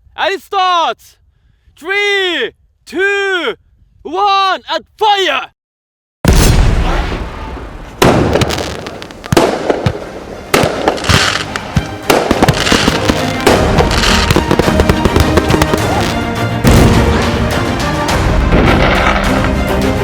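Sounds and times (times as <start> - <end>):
firework bangs and crackles: 6.3 - 17.6, 18.2 - 19.8
music: 10.2 - 20.0.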